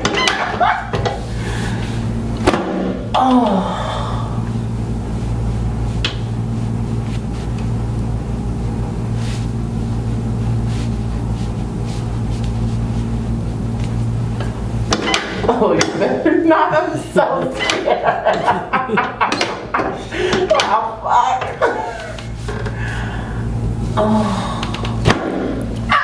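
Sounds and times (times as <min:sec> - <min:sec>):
short falling moan: 0:03.0 - 0:04.5, 0:23.9 - 0:25.0.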